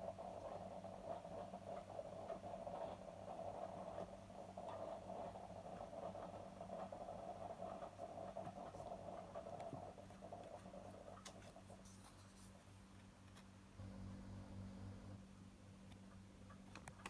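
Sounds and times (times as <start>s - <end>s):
low electrical hum: 0.0s - 17.0s
faint scratchy rubbing: 0.1s - 13.5s.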